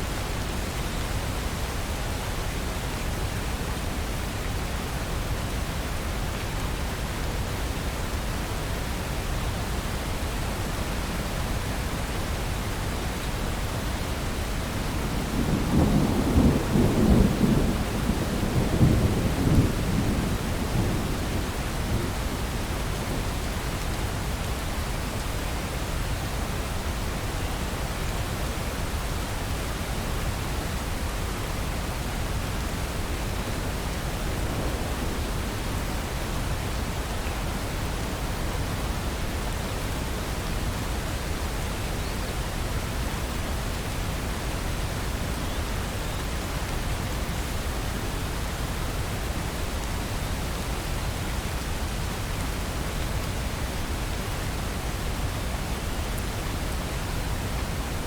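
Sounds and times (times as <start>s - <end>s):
steady rain: 0.0s - 58.0s
low rumble of thunder: 14.3s - 24.6s, 32.5s - 39.2s.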